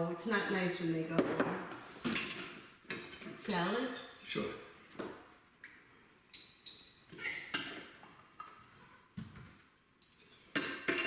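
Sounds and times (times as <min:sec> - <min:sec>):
cutlery clinking on plates: 0:02.0 - 0:04.2, 0:06.3 - 0:08.6, 0:10.0 - 0:11.0.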